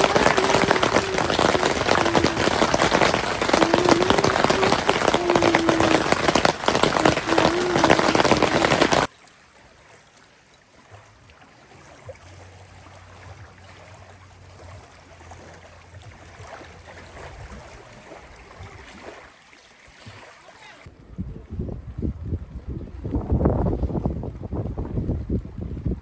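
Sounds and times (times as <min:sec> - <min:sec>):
heavy rain pattering: 0:00.0 - 0:09.1.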